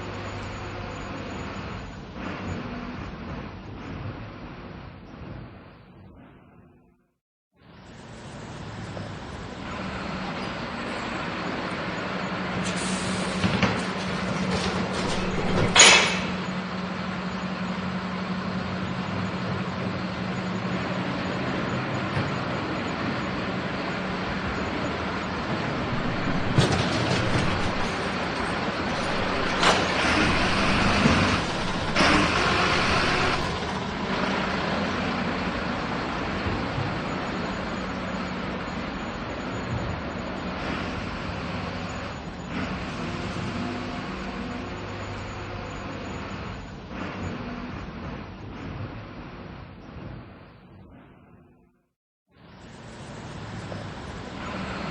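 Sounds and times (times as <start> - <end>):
garbage truck running: 0.0 - 6.6, 7.6 - 51.6, 52.4 - 54.9
metal clanks: 13.7 - 16.6, 25.9 - 33.5
loud bang: 14.9 - 16.6.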